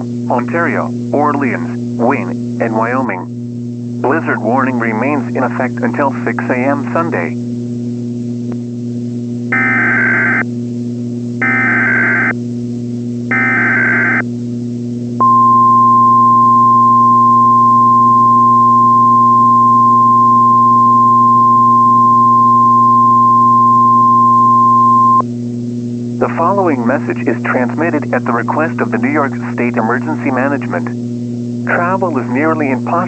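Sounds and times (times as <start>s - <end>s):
low steady hum: 0.0s - 33.0s
steady alarm tone: 9.5s - 10.5s, 11.4s - 12.4s, 13.3s - 14.2s, 15.2s - 25.2s.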